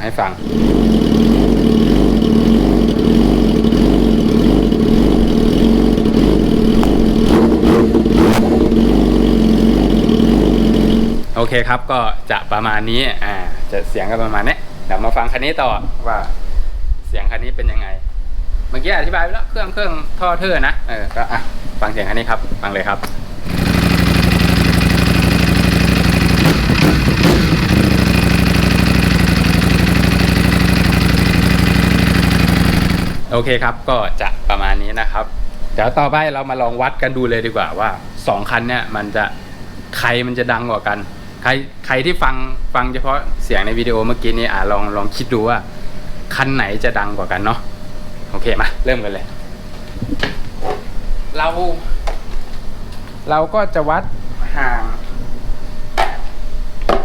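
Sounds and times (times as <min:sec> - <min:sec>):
motorcycle engine idling: 0:00.0 - 0:11.3, 0:23.2 - 0:33.6
motorcycle throttle blip: 0:05.9 - 0:09.1.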